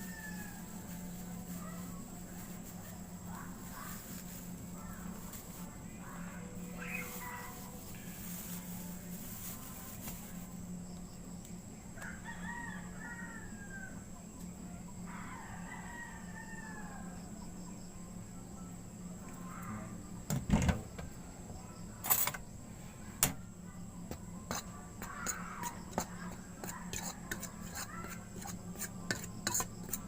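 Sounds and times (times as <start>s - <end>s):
rooster crowing: 0.0s - 1.0s, 12.0s - 14.1s, 15.1s - 17.3s.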